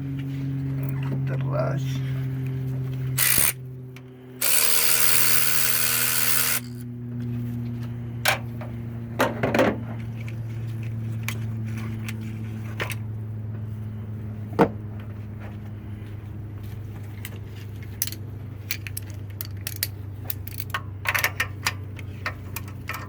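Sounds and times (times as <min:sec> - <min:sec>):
steady low hum: 0:00.0 - 0:23.0
metallic tool clicks and clinks: 0:03.2 - 0:03.6, 0:04.4 - 0:06.8, 0:18.0 - 0:23.0
power tool running: 0:03.2 - 0:03.6, 0:04.2 - 0:06.9.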